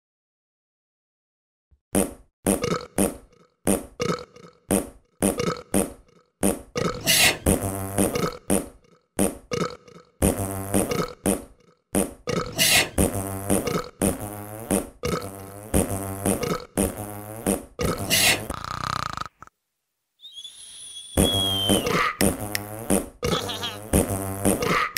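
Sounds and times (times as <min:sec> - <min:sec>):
fart sound effects: 0:01.9 - 0:19.5, 0:21.2 - 0:24.9.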